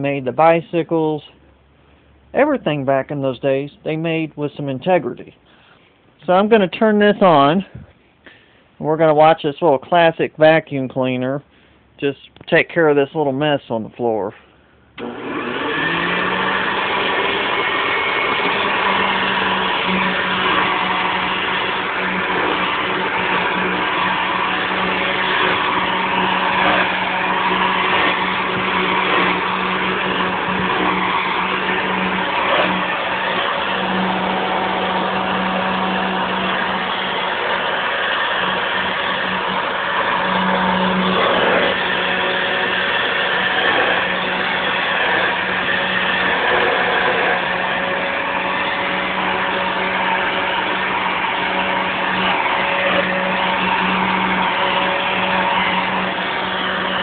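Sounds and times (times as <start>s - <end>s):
vacuum cleaner running: 15.0s - 57.0s.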